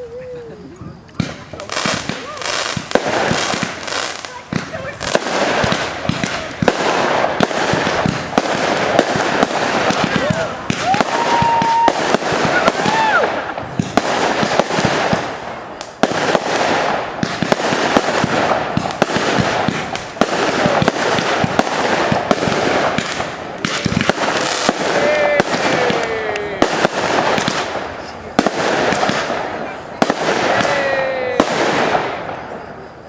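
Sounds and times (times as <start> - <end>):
fireworks bangs and crackles: 0.0 - 33.0
fireworks whistling: 0.0 - 33.0.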